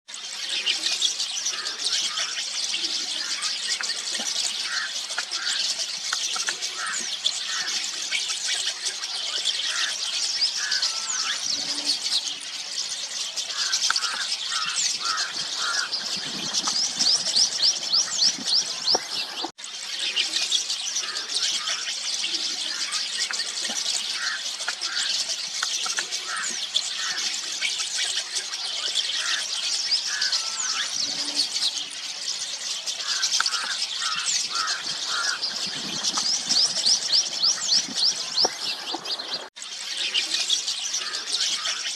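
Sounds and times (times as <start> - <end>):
starlings chattering: 0.1 - 41.9.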